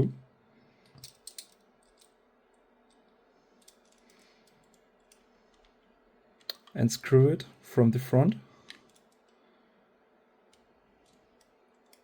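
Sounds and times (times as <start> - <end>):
faint clicks of plastic parts: 0.8 - 6.8, 8.6 - 9.5, 10.5 - 12.0.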